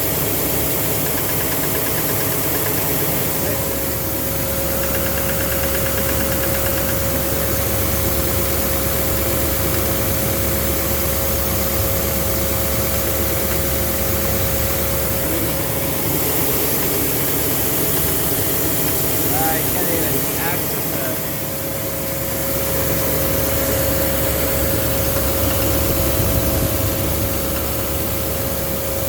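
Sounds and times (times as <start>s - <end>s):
diesel engine idling: 2.6s - 29.0s
steady whine: 2.8s - 29.0s.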